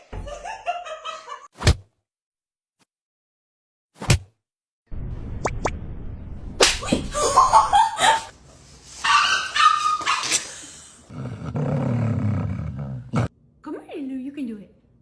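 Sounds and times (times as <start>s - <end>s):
dog barking and yipping: 8.9s - 13.3s.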